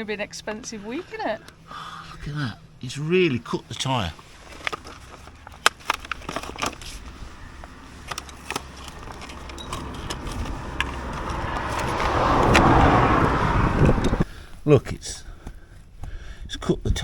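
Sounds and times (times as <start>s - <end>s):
road vehicle passing: 4.2s - 14.3s.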